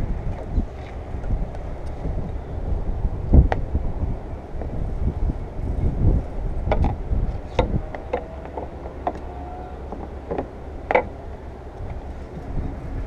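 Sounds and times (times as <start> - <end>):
wind rumbling on microphone: 0.0 - 13.0
light clicks and knocks: 6.7 - 11.2.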